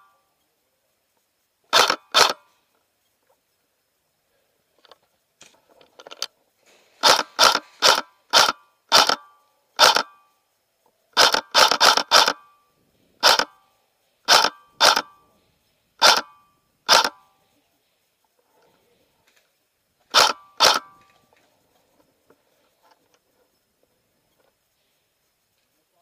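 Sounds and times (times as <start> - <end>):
airsoft gun shots: 7.0 - 9.2.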